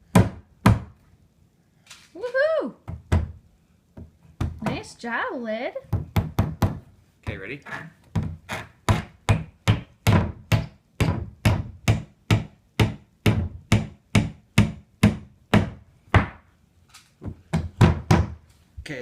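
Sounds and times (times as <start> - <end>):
hammer pounding on wood: 0.0 - 1.0, 5.9 - 6.9, 8.1 - 16.4, 17.3 - 18.4.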